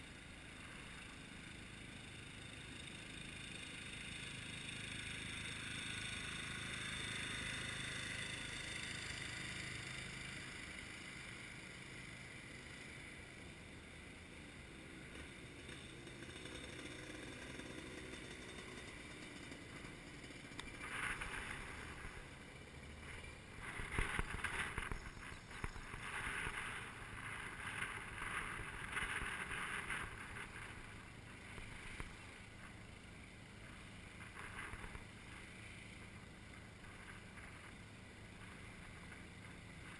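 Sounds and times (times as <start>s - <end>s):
kart engine: 0.0s - 39.9s.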